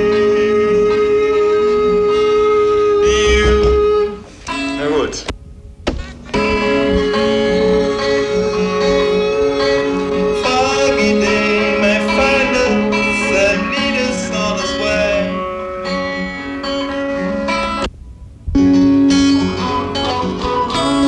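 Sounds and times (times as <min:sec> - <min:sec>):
held guitar chords: 0:00.0 - 0:21.0
wavering lead guitar line: 0:00.0 - 0:21.0.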